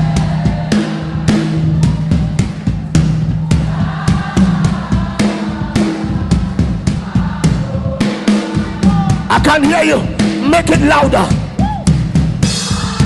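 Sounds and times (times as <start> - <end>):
congregation singing: 0.0 - 2.3, 3.4 - 9.3
drum kit steady beat: 0.0 - 13.0.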